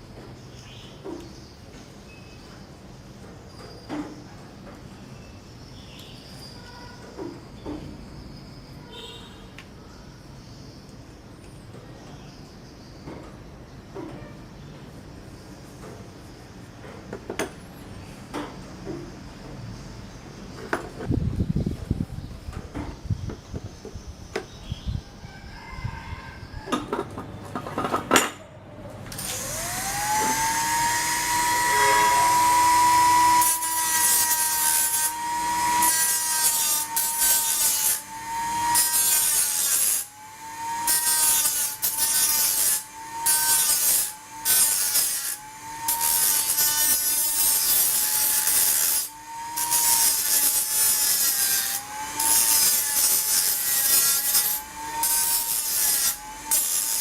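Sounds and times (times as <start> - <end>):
power tool motor running: 29.1 - 57.0
harsh rasping of cutting: 29.2 - 57.0.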